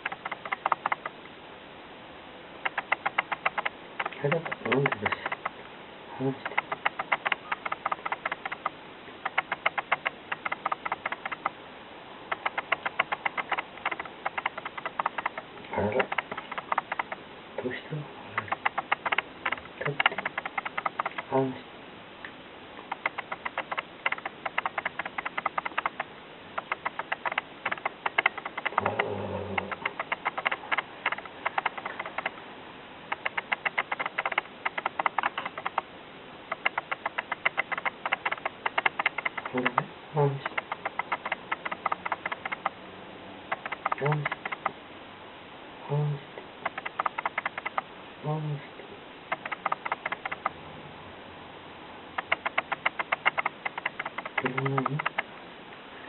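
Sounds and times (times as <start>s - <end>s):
kitten mouth wet clicking: 2.7s - 5.5s, 6.4s - 11.5s, 12.3s - 17.2s, 18.4s - 21.3s, 22.9s - 32.4s, 33.1s - 35.8s, 36.5s - 42.8s, 52.2s - 55.2s.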